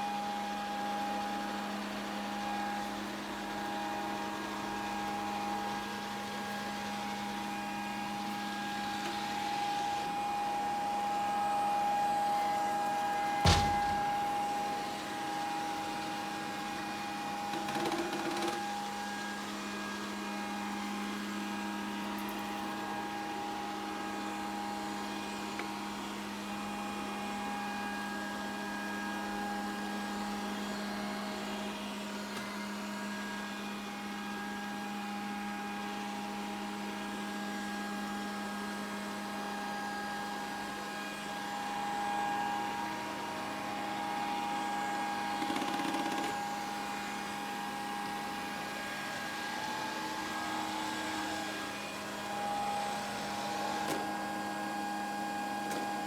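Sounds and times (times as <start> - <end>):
robot vacuum motor humming: 42.6 - 54.8.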